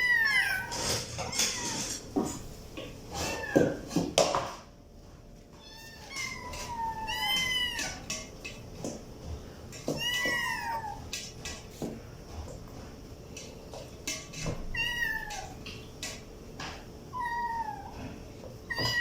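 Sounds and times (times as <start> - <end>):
kitten meowing: 5.6 - 8.1, 10.0 - 11.0, 14.7 - 15.6, 17.2 - 18.0, 18.7 - 19.0.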